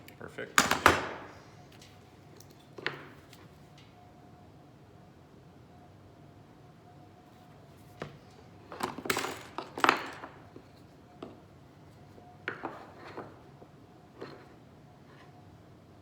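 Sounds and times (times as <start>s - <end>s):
wooden parts and tools clattering: 8.6s - 11.4s.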